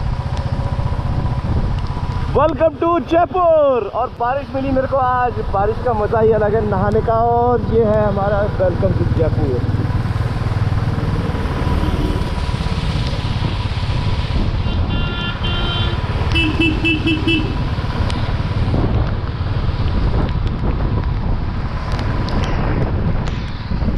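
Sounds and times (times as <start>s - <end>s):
wind and road noise: 0.0s - 23.9s
short horn toots: 14.6s - 17.6s
vehicle horn: 14.6s - 17.7s.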